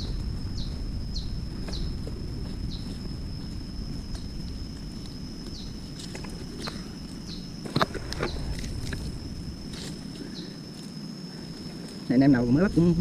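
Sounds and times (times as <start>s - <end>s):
low rumble: 0.0s - 10.4s
high-pitched insect drone: 0.0s - 13.0s.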